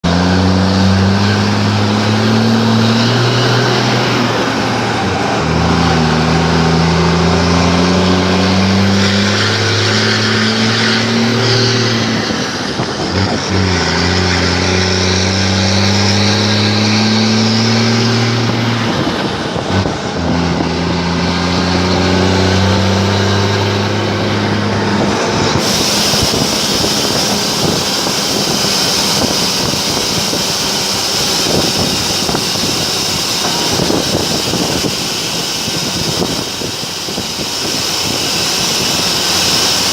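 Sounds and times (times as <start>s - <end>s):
loud truck exhaust shifting gears: 0.0s - 39.9s
sudden hiss: 25.5s - 39.9s.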